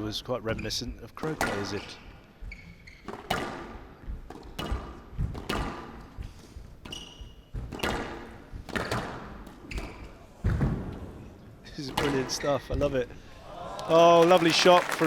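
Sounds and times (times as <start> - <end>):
shoes squeaking on court floor: 0.5 - 13.0
squash ball hitting rackets and walls: 1.2 - 2.0, 3.0 - 13.0.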